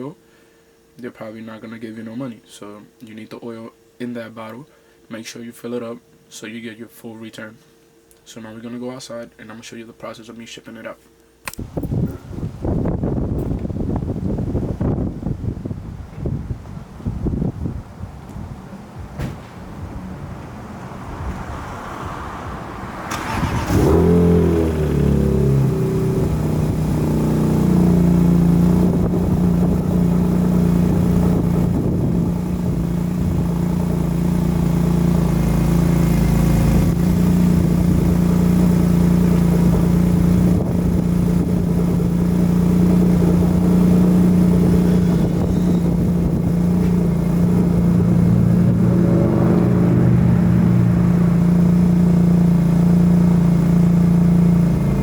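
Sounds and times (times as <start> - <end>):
car engine starting and idling: 17.8 - 55.0
starter motor cranking: 23.1 - 24.6.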